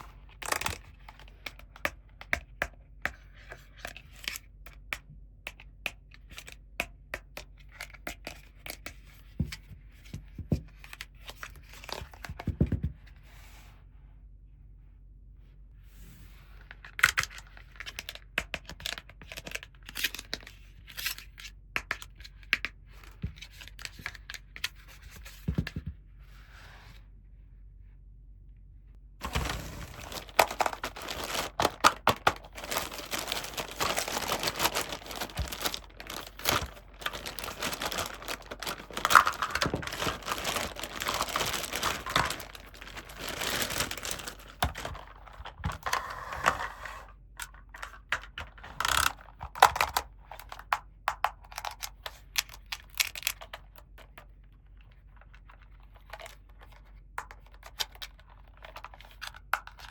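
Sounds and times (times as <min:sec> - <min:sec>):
plastic packaging crinkling: 0:00.0 - 0:01.3, 0:29.2 - 0:46.0
plastic pieces clicking and tapping: 0:29.3 - 0:46.0, 0:47.4 - 0:54.3.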